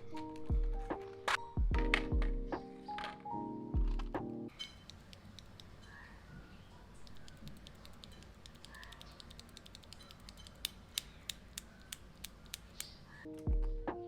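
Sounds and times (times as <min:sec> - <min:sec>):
mechanical keyboard typing: 0:07.0 - 0:12.9.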